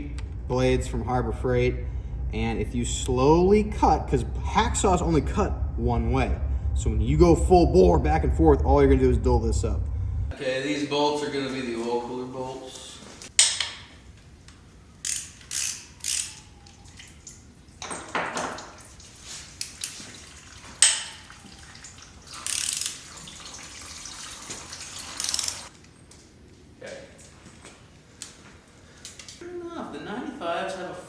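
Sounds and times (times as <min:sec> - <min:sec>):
ratchet wrench clicking: 0:15.0 - 0:16.5, 0:22.4 - 0:23.0, 0:25.2 - 0:25.7.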